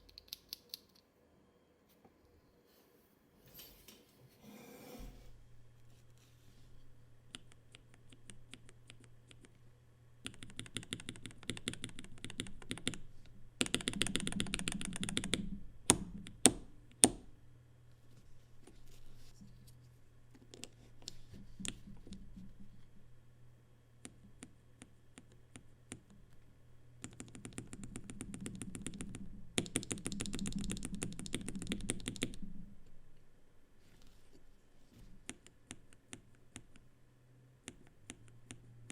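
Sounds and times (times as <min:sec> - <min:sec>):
typing on mechanical keyboard: 0:10.2 - 0:16.6, 0:27.0 - 0:32.6.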